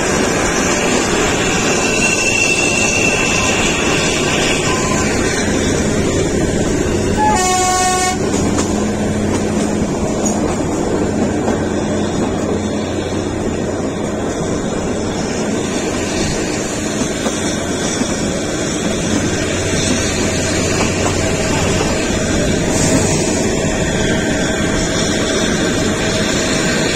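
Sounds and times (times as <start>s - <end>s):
small train running: 0.0s - 26.9s
train horn blast: 7.0s - 8.5s.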